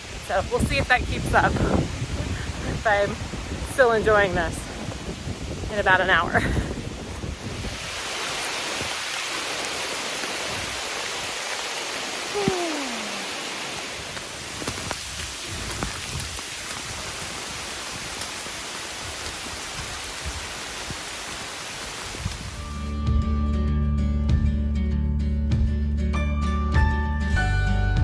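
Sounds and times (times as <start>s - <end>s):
steady rain: 0.0s - 22.8s
raindrops ticking: 11.4s - 22.6s.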